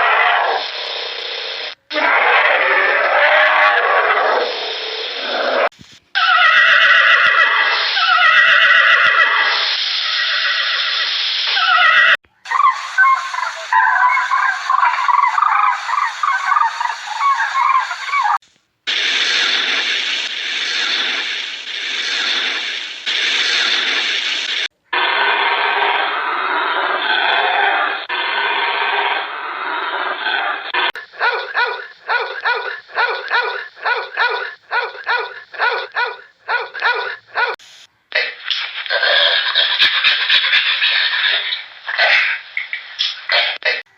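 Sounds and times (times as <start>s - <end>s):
birds chirping: 12.4s - 18.4s, 31.0s - 37.6s
brief noise burst: 12.4s - 25.2s
dog barking: 31.0s - 37.6s.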